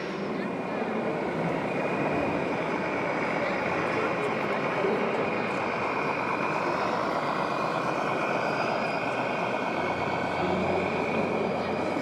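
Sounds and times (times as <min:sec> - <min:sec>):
toy truck diesel engine sound: 0:02.7 - 0:12.0.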